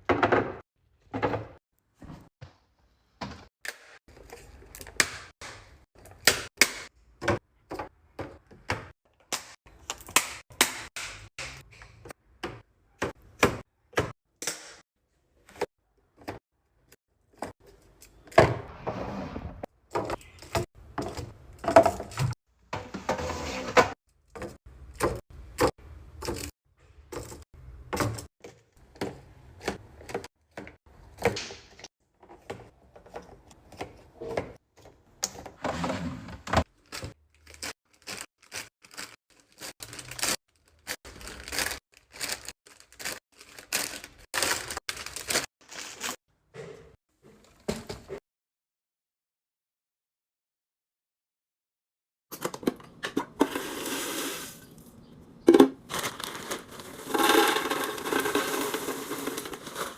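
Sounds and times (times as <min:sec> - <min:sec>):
plastic containers clacking: 0:55.4 - 0:59.9.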